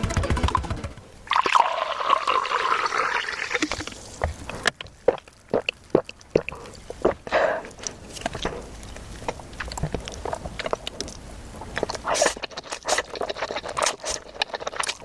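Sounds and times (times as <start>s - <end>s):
wet liquid eating sound: 1.3s - 15.0s
clicks of biting and chewing: 3.6s - 15.0s.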